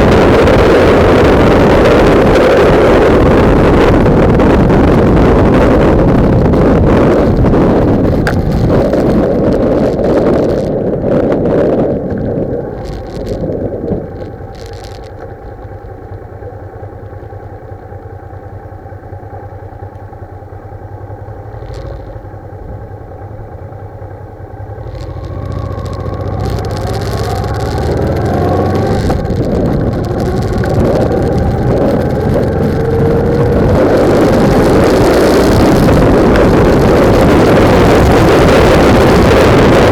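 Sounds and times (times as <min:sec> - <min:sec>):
wind buffeting microphone: 0:00.0 - 0:17.6, 0:21.0 - 0:39.9
motorcycle engine running: 0:00.0 - 0:39.9.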